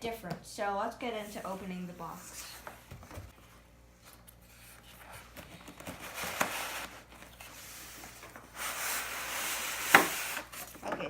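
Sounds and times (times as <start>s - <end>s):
cardboard scraping: 4.4s - 10.8s.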